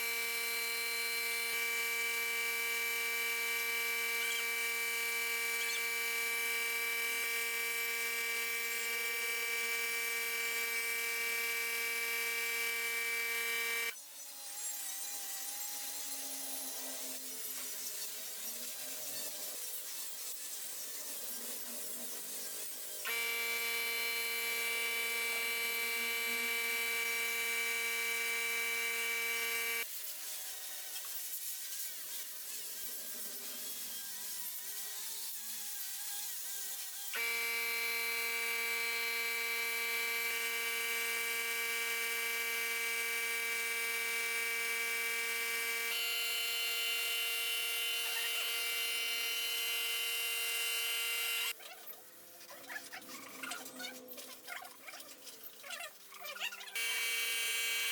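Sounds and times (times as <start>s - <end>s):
power tool motor whining: 0.0s - 14.0s, 23.0s - 29.9s, 37.0s - 51.6s, 56.8s - 57.9s.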